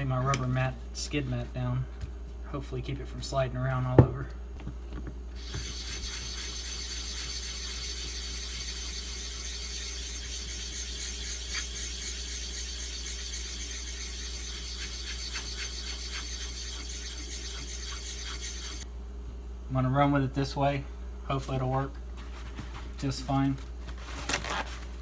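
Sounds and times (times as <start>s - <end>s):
stone scraping on whetstone: 5.4s - 18.8s.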